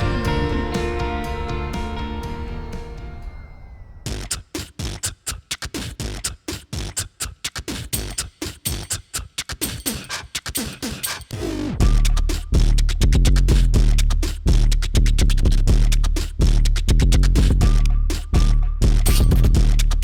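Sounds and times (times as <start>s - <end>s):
heavy bass beat: 0.0s - 3.0s, 11.8s - 20.0s
beatbox mouth percussion: 4.2s - 20.0s.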